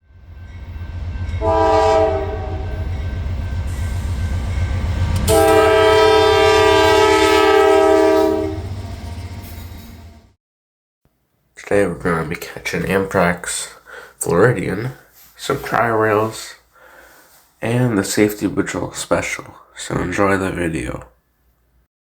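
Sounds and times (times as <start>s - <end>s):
passing train rumble: 0.0s - 10.4s
locomotive air horn: 1.4s - 2.9s, 5.2s - 8.8s.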